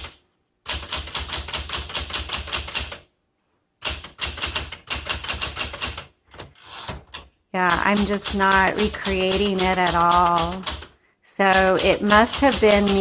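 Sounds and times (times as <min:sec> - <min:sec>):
typewriter key strikes: 0:03.8 - 0:10.9, 0:11.6 - 0:13.0.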